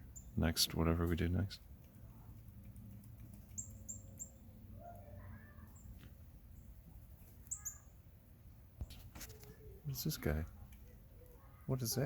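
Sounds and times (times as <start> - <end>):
high falling bird chirps: 0.0 - 0.5, 3.4 - 8.1
faint lower bird calls: 7.4 - 8.0.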